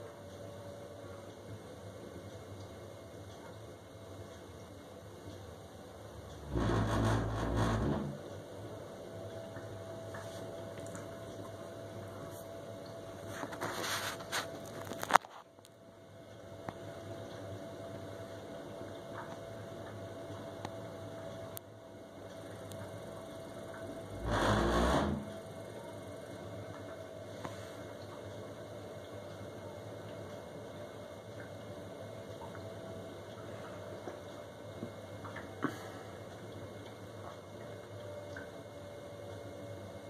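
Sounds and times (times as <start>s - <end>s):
boiler humming: 0.0s - 40.0s
short deep rumble: 6.4s - 8.2s.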